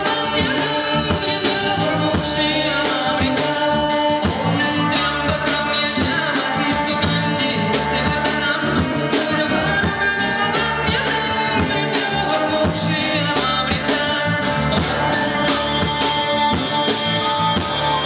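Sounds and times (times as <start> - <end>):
drums: 0.0 - 18.0
guitar: 0.0 - 18.0
person singing: 0.0 - 18.0.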